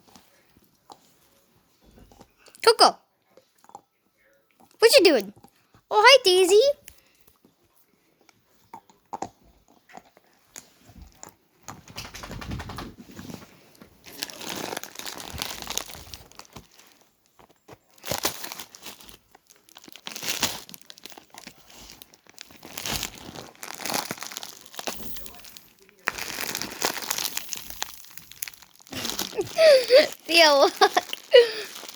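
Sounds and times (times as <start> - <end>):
crinkling and rustling: 10.0 - 31.9.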